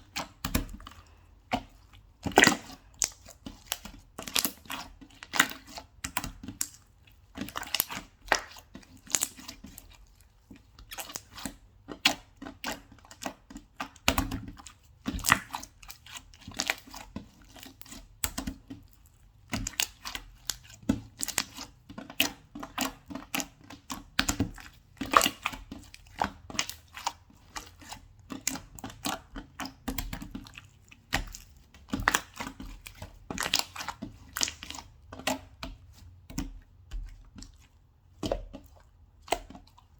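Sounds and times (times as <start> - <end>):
hands squishing slime: 0.0 - 39.9.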